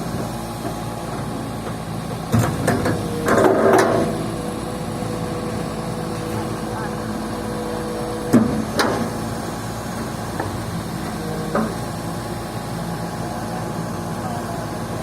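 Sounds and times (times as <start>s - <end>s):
diesel engine running: 0.0s - 15.0s
sharp engine knocks: 0.1s - 4.2s, 8.3s - 9.2s.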